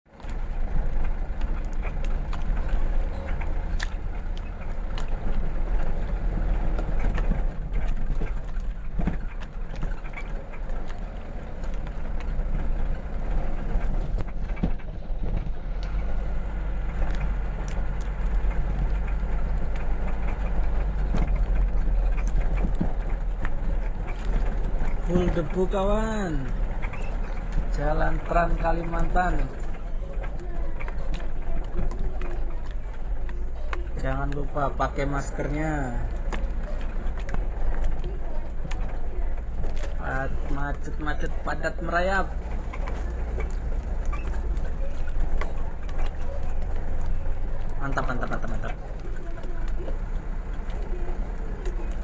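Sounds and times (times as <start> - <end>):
vehicle engine and road rumble: 0.0 - 52.0
knocks and rattles: 0.1 - 52.0.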